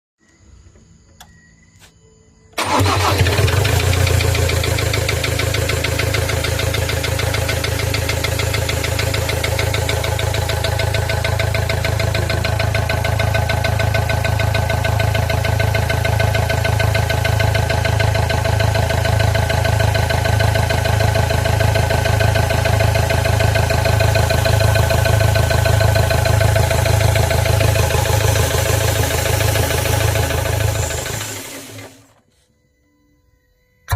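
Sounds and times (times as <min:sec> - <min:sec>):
diesel engine idling: 0:02.6 - 0:32.2
engine knocking tick: 0:04.8 - 0:31.3.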